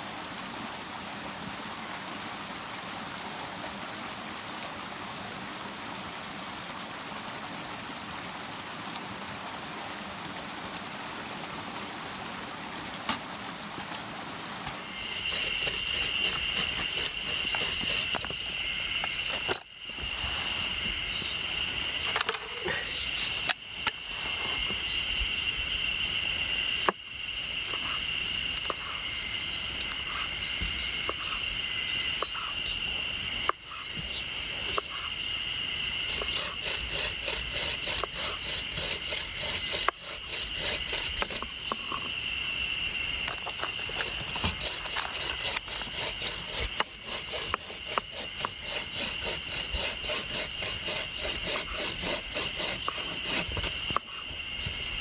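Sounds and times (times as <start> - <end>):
fast even scraping: 14.6 - 18.5, 36.1 - 41.6, 43.6 - 54.2
insects buzzing: 14.6 - 55.0.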